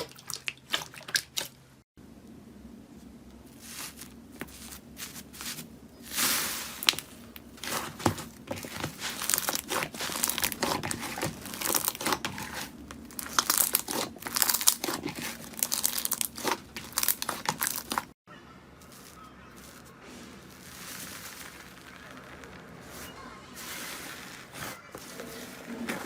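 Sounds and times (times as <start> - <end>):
slime crackling when squeezed: 19.0 - 24.7.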